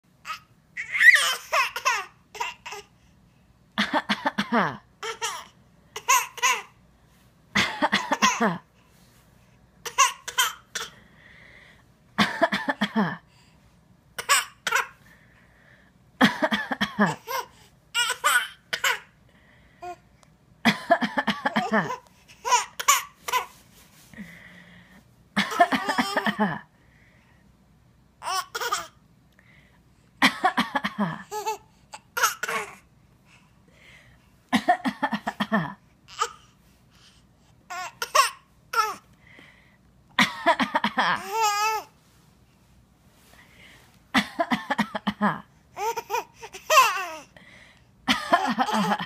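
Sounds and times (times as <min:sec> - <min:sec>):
child mock coughing: 0:07.6 - 0:08.6, 0:32.2 - 0:32.8.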